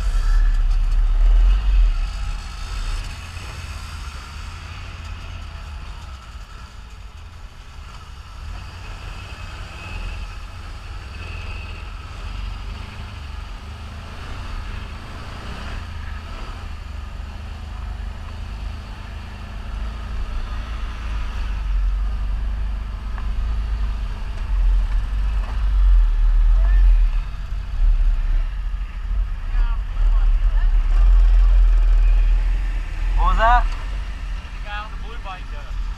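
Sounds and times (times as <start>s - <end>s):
atv engine running: 0.0s - 35.9s.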